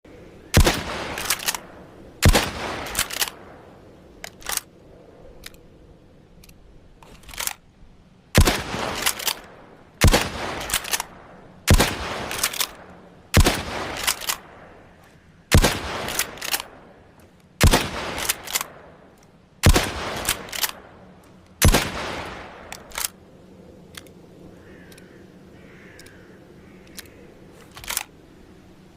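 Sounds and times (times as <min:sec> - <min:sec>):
rifle shots: 0:00.5 - 0:03.6, 0:08.4 - 0:14.7, 0:15.5 - 0:16.9, 0:17.6 - 0:19.0, 0:19.6 - 0:23.2
rifle bolt clicks: 0:00.6 - 0:03.4, 0:04.2 - 0:04.7, 0:06.4 - 0:07.6, 0:08.4 - 0:23.2, 0:24.9 - 0:25.1, 0:26.8 - 0:28.2.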